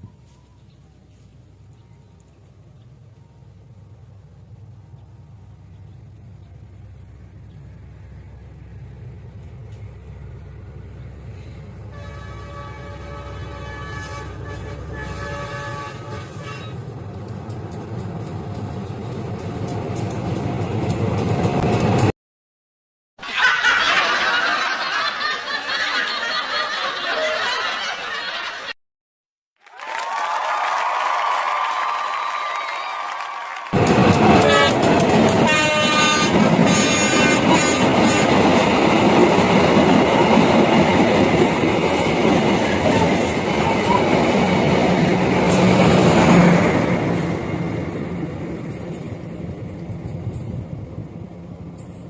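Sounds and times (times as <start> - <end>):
train passing close by: 0.8 - 22.1, 33.8 - 52.0
group laughing: 23.2 - 28.8.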